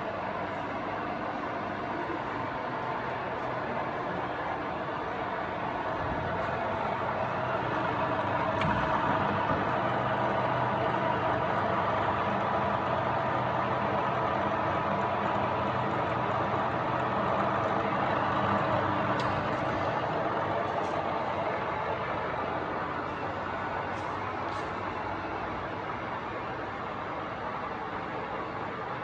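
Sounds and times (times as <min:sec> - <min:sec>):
drilling machine running: 0:05.9 - 0:24.4.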